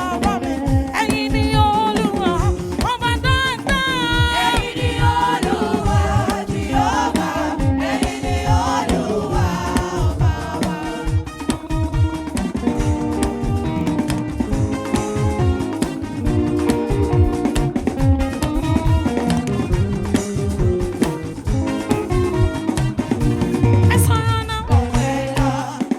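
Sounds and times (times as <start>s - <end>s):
choir singing with vibrato: 0.0s - 0.9s, 3.5s - 12.0s, 24.0s - 25.9s
bass drum beat: 0.0s - 25.9s.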